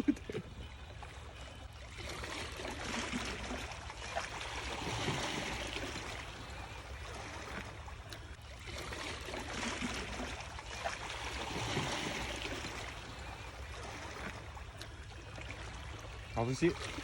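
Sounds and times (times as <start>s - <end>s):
sea water washing among rocks: 8.6s - 14.3s.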